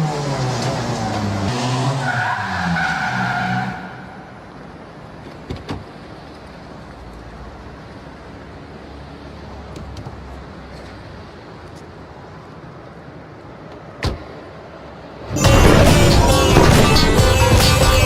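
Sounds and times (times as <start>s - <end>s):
rally car engine revving: 0.0s - 4.0s, 15.3s - 18.0s.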